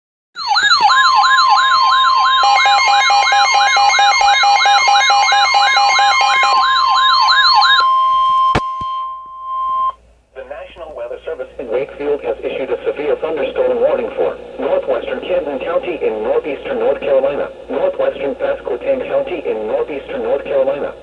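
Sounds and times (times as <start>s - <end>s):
wailing siren sweep: 0.4s - 9.9s.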